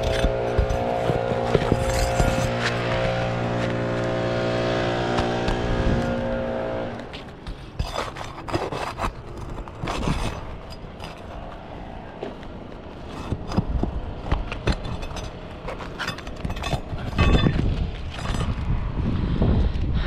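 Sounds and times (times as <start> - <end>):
scrapes and clicks on roof shingles: 0.0 - 4.1, 7.0 - 18.8
motor humming: 0.0 - 7.2.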